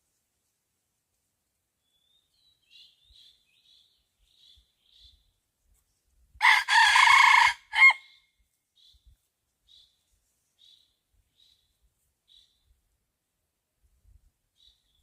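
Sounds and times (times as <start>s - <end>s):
rooster crowing: 6.4s - 8.1s.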